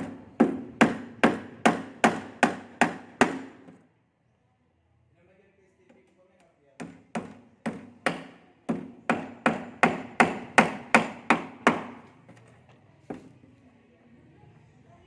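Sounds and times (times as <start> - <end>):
hammer striking wood: 0.0 - 3.8, 6.8 - 12.2.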